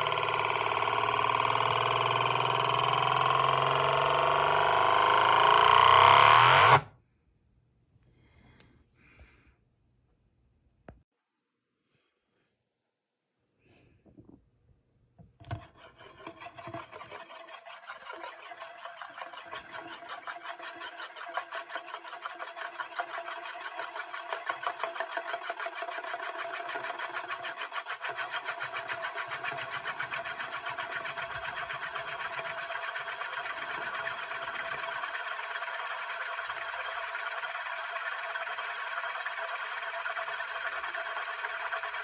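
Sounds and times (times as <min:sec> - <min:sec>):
spinning metal disc whirring: 0:00.0 - 0:06.9, 0:15.4 - 0:42.0.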